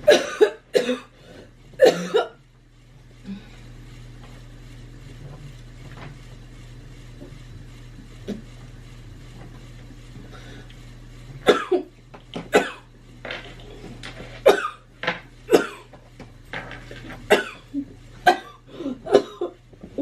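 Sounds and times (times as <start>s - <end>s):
woman coughing: 0.1s - 1.1s, 1.8s - 2.4s, 11.5s - 11.9s, 12.5s - 12.9s, 14.4s - 14.8s, 15.5s - 15.9s, 17.3s - 19.6s.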